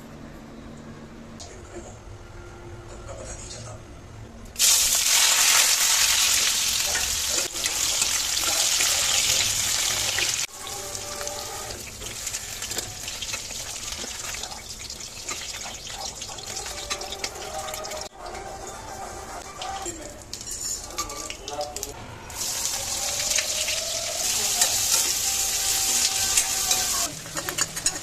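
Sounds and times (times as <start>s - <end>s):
water running from tap: 21.3s - 27.1s.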